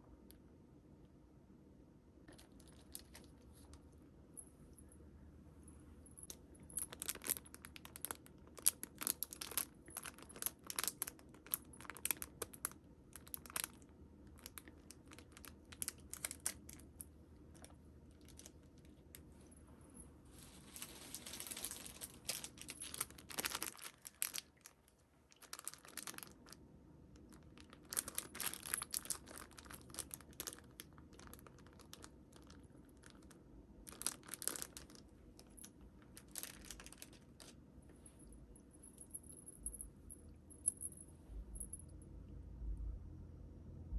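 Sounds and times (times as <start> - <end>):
packaging crinkling and rustling: 6.7 - 16.9, 20.4 - 26.6, 27.2 - 37.6.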